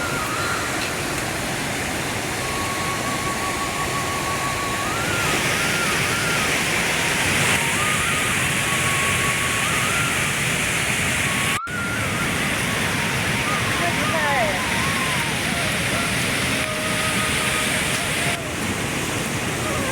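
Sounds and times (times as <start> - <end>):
faint high tune: 0.0 - 10.3, 11.3 - 18.5
rushing water: 0.0 - 19.9.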